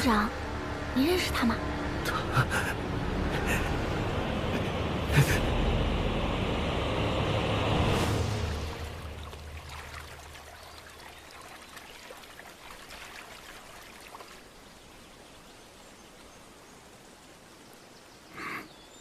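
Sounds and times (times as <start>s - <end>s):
faint trickling water drips: 9.0s - 18.2s.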